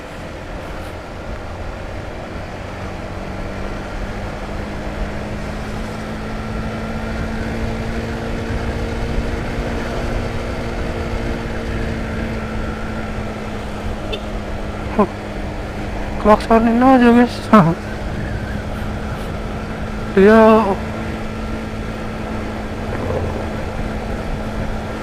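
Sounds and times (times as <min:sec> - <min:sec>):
motorcycle engine running: 0:17.8 - 0:25.0
wind rumble on microphone: 0:17.9 - 0:20.0, 0:20.8 - 0:25.0.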